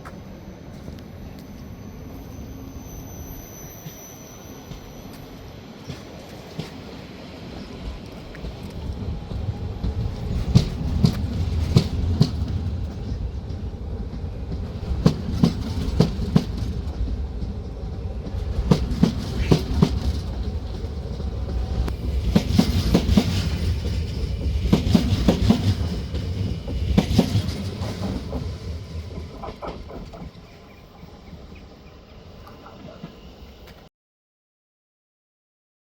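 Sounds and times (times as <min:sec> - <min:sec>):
train rumbling by: 0:00.0 - 0:33.9
train wheels clacking over rail joints: 0:05.8 - 0:30.6.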